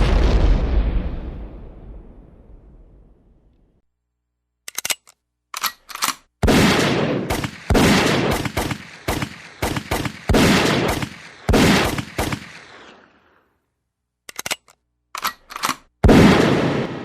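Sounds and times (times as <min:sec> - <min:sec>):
short clicks: 0:04.6 - 0:06.3, 0:14.3 - 0:15.9
echoing gunshots: 0:06.4 - 0:13.4, 0:16.0 - 0:17.0.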